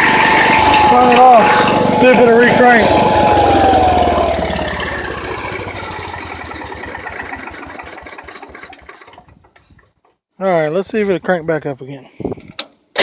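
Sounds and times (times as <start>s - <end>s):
tractor engine running down: 0.0s - 9.6s.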